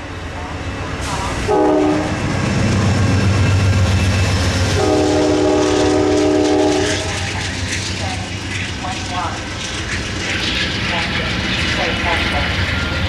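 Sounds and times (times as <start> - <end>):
train rumble: 0.0 - 13.0
locomotive air horn: 1.5 - 2.1, 4.8 - 7.2.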